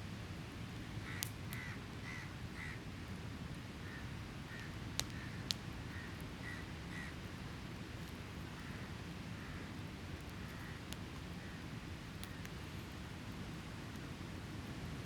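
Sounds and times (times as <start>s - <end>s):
campfire popping: 4.6s - 5.7s.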